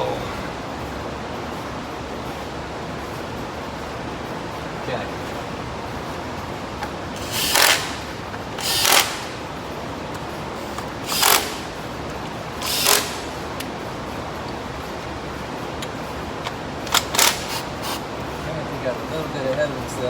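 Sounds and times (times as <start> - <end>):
ratchet wrench clicking: 6.8 - 9.4, 10.1 - 13.7, 15.8 - 18.4.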